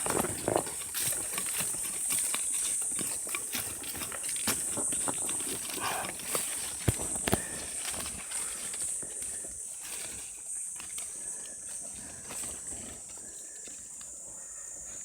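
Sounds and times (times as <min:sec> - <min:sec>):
hand tool digging stony soil: 0:00.0 - 0:13.2.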